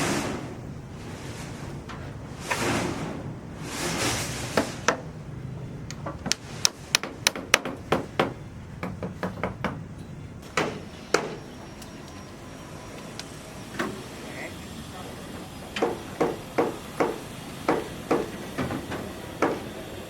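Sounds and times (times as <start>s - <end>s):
sharp knocks and clacks: 5.8s - 11.4s.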